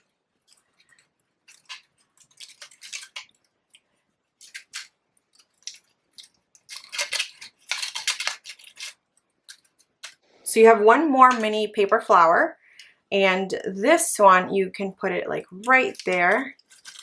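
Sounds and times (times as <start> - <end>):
paper rustling and crinkling: 0.0 - 10.2, 15.7 - 17.0.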